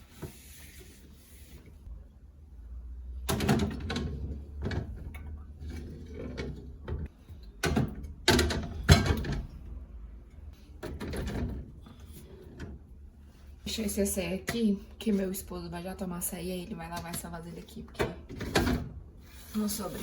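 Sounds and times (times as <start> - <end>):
kitchen items knocking and bumping: 3.3 - 9.6, 10.8 - 11.8.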